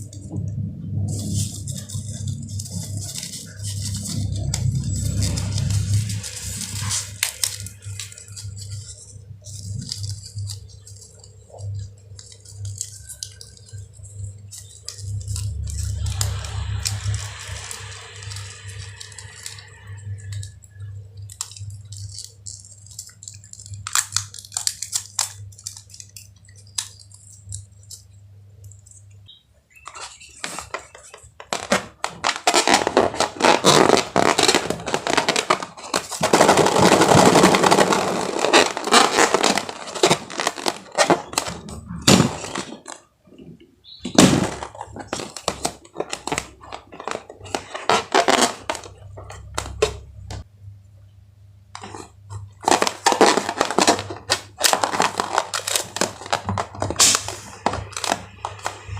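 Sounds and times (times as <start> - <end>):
steady low hum: 0.0 - 29.7.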